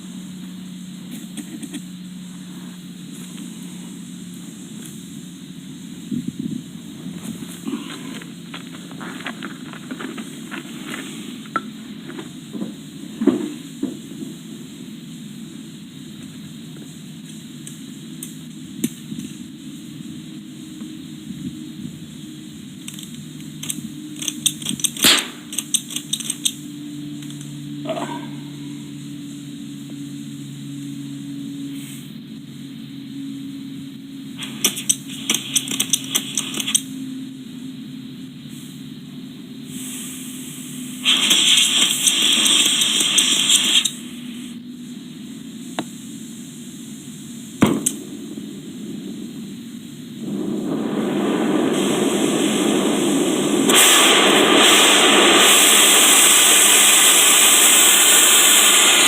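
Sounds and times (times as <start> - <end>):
loud hiss: 0.0 - 30.8, 31.4 - 33.2, 34.2 - 59.0
steady low hum: 0.0 - 59.0
low rushing noise: 27.8 - 29.3, 45.0 - 57.2.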